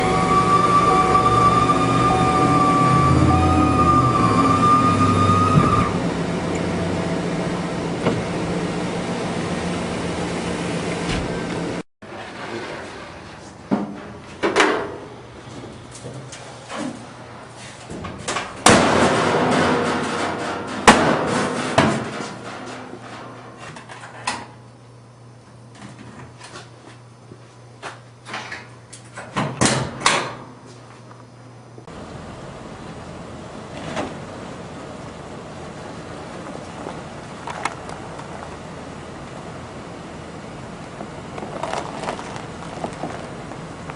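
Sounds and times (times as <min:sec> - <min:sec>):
low machine hum: 0:00.0 - 0:11.8, 0:30.5 - 0:43.9
machine whine: 0:00.0 - 0:11.8.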